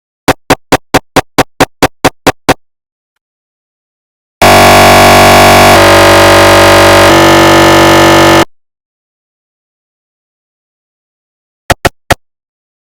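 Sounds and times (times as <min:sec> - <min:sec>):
mri scanner buzzing: 0:04.4 - 0:08.5.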